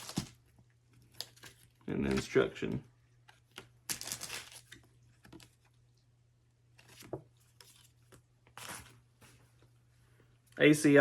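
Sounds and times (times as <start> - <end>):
paper and packaging rustling: 0.0 - 0.4, 3.9 - 5.6, 6.8 - 9.4.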